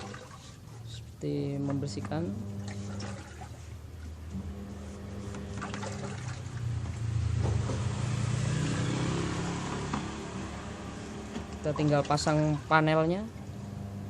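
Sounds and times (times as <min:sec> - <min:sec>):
water churning: 0:00.0 - 0:07.4
washing machine motor hum: 0:00.0 - 0:14.0.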